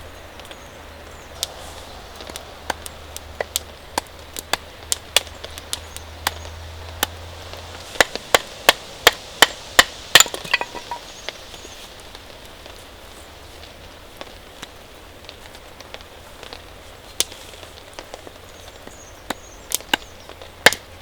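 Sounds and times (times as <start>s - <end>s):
axe chopping wood: 9.8s - 11.0s.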